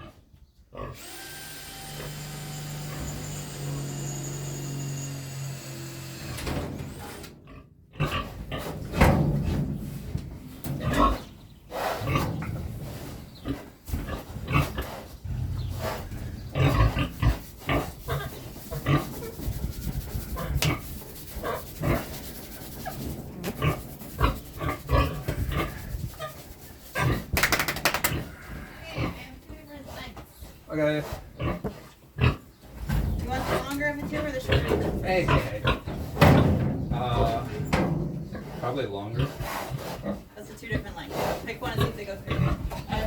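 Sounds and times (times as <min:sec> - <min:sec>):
pigs grunting: 0:07.4 - 0:08.9, 0:10.7 - 0:22.2, 0:22.9 - 0:27.4, 0:28.0 - 0:29.2, 0:31.0 - 0:32.5, 0:33.3 - 0:43.0.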